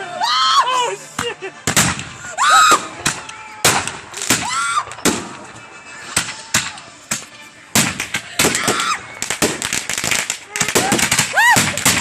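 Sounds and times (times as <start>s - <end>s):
fireworks bangs: 3.0s - 12.0s.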